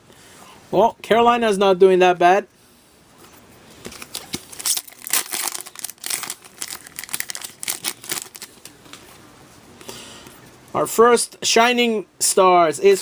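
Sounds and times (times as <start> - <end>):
card pack wrapper crinkling: 3.8 - 8.8.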